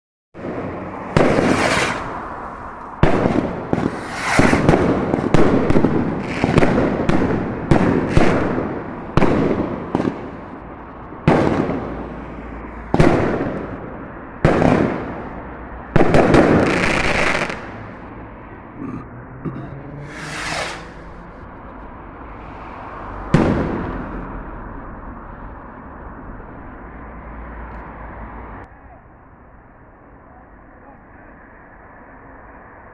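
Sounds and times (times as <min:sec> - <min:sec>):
fireworks bangs: 0:00.4 - 0:24.3.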